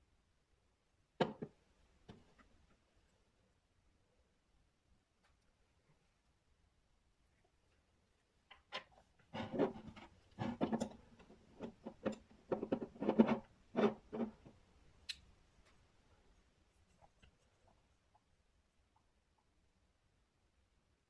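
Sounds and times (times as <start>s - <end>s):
objects rubbing and knocking: 8.8s - 14.6s.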